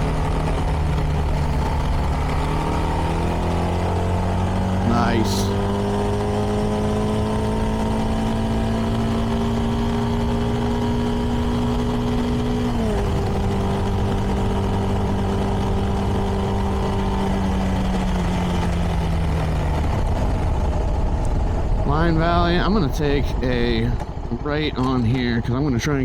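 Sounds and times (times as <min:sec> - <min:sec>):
motorcycle engine while riding: 0:00.0 - 0:26.0.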